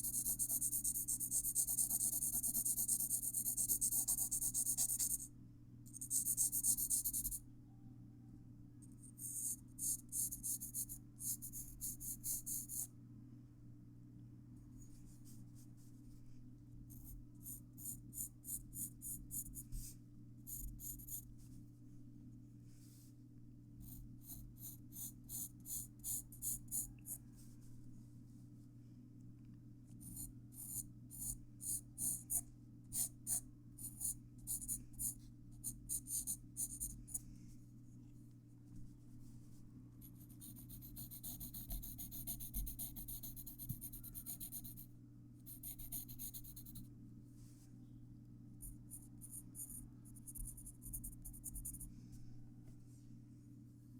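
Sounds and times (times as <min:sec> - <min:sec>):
pencil scratching on paper: 0:00.0 - 0:05.3, 0:06.0 - 0:07.4, 0:09.2 - 0:12.9, 0:17.4 - 0:19.9, 0:23.9 - 0:27.2, 0:30.0 - 0:37.2, 0:40.1 - 0:44.8, 0:45.5 - 0:46.8
faint steady hum: 0:00.0 - 0:53.9.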